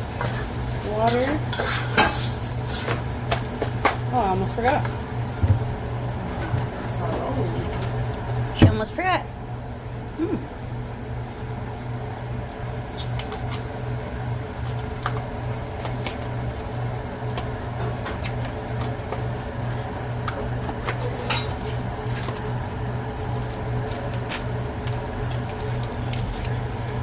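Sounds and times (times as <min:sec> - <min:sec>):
rice toasting in hot oil: 0:00.0 - 0:06.2, 0:11.0 - 0:27.0
steady low hum: 0:00.0 - 0:27.0
small crackles and pops: 0:14.4 - 0:19.6.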